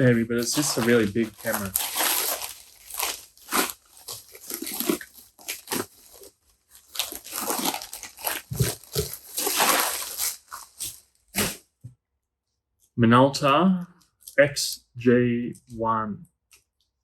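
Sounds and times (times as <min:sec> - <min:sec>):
newspaper rustling and crinkling: 0:00.0 - 0:11.6.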